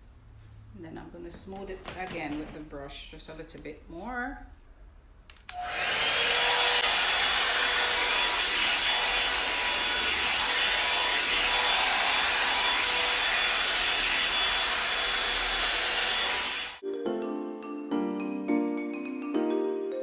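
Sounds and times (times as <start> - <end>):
hot air brush blowing: 5.5 - 16.8.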